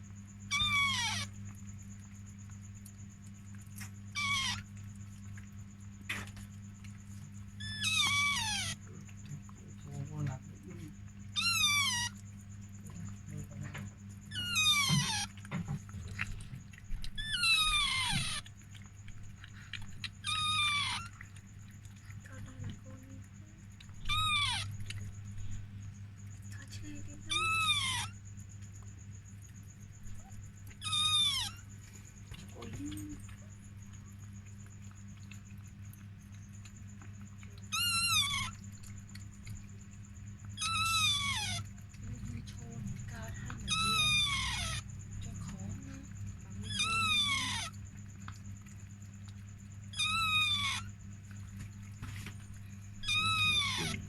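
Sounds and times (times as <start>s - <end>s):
steady low hum: 0.0s - 54.0s
dog whimpering: 0.5s - 1.3s, 4.1s - 4.7s, 7.6s - 9.1s, 11.3s - 12.2s, 13.6s - 18.9s, 19.5s - 22.8s, 23.8s - 25.6s, 26.8s - 28.2s, 30.0s - 31.7s, 37.6s - 38.8s, 40.5s - 47.8s, 49.9s - 50.9s, 53.0s - 54.0s
puppy mewing cries: 0.5s - 1.5s, 3.7s - 5.5s, 7.6s - 9.6s, 11.2s - 12.3s, 13.6s - 22.8s, 23.8s - 25.6s, 26.8s - 28.2s, 29.5s - 33.4s, 37.6s - 39.0s, 40.5s - 48.7s, 49.9s - 51.7s, 52.5s - 54.0s.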